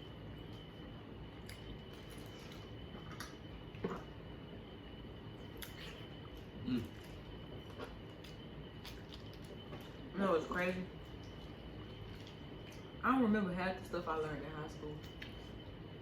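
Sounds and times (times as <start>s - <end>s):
wet chewing: 5.4s - 10.0s.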